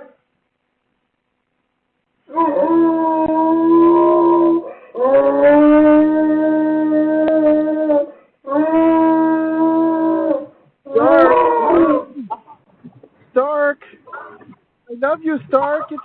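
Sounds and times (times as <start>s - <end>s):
dog howling: 2.3s - 12.2s.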